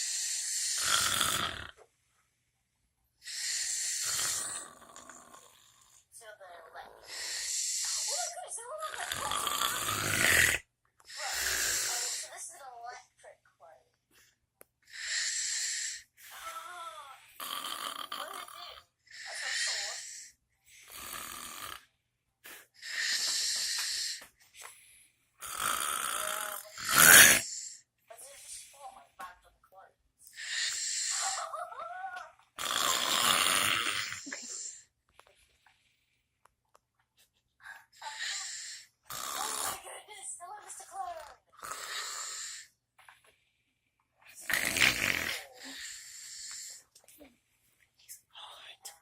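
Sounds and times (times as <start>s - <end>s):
person snoring: 0.0s - 1.8s, 3.2s - 6.0s, 6.9s - 8.3s, 8.9s - 12.4s, 14.9s - 21.9s, 22.5s - 24.3s, 25.4s - 27.8s, 30.3s - 31.6s, 32.6s - 34.8s, 38.0s - 39.9s, 41.6s - 42.7s, 44.3s - 46.8s
short breaths: 22.4s - 25.3s.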